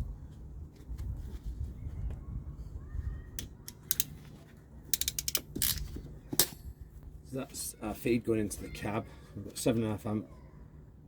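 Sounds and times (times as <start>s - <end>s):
metallic clicks of hand tools: 3.7s - 4.1s, 4.9s - 5.8s.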